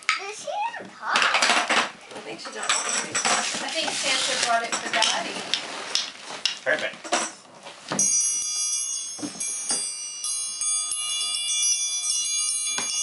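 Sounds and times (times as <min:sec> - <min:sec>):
electronic toy chiming tune: 0:08.0 - 0:13.0.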